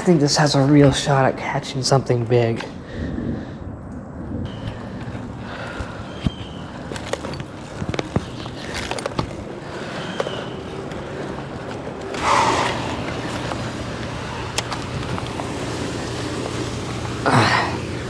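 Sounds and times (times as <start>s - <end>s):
steady low hum: 0.0s - 18.0s
brief rushing swell: 12.2s - 14.5s.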